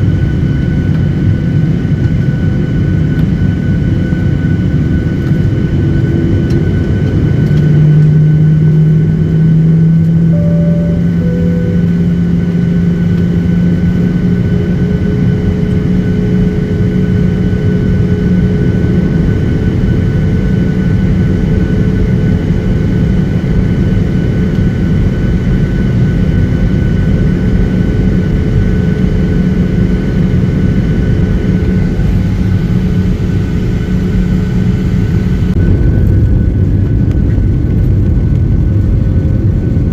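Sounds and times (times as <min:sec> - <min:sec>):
high engine whine: 0:03.0 - 0:38.0
low engine drone: 0:04.5 - 0:22.8.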